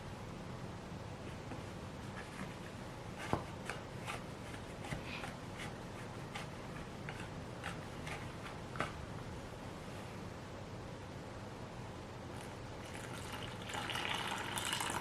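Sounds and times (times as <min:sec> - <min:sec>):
hands kneading dough: 0:01.1 - 0:10.2.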